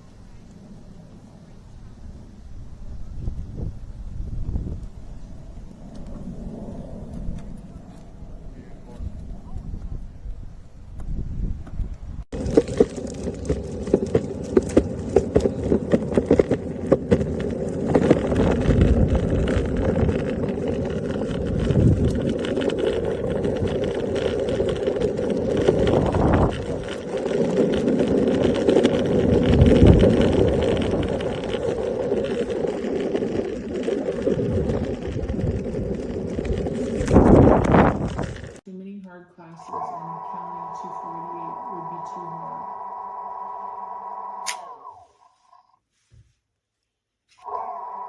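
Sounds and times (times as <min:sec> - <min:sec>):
wind noise on microphone: 0:01.8 - 0:38.6
rumble of moving vehicle: 0:11.0 - 0:38.6
sharp clicks: 0:44.4 - 0:44.9.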